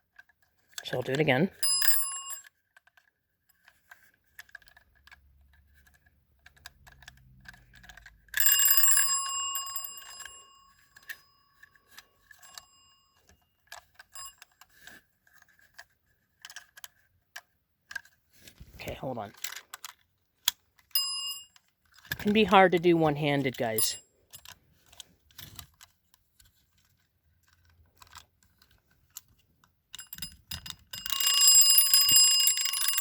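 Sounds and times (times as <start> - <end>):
fire alarm bell ding: 1.6 - 2.5, 8.4 - 10.8, 31.0 - 33.0.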